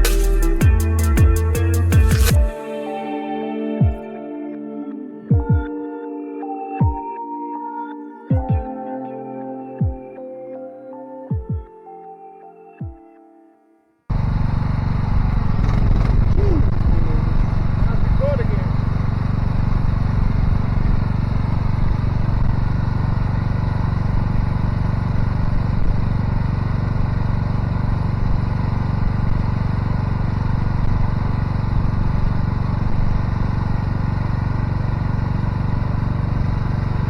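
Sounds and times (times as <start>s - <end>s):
engine running steadily: 0.0s - 2.4s, 14.1s - 37.0s.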